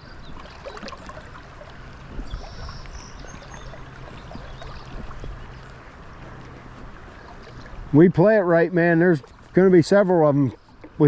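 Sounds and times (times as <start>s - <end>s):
splashes from wading: 0.0s - 7.9s
river water running: 0.0s - 11.0s.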